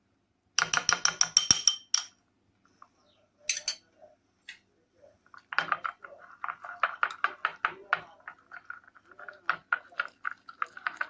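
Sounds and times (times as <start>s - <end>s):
spoon clinking against bowl: 0.6s - 2.2s, 3.5s - 3.9s
stirring thick marinade: 5.2s - 11.0s.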